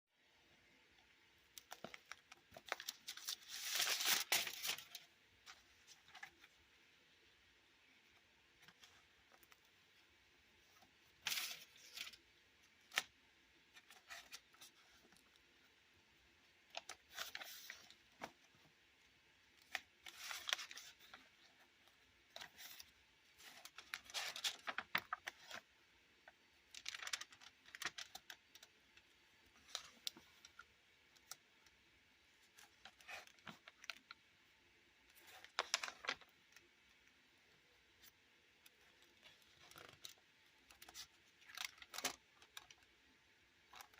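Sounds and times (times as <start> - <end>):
pages turning: 1.4 - 6.5, 10.7 - 12.2, 12.8 - 15.4, 16.7 - 18.6, 19.6 - 25.7, 26.6 - 28.8, 32.4 - 34.1, 35.1 - 36.6, 38.0 - 42.9.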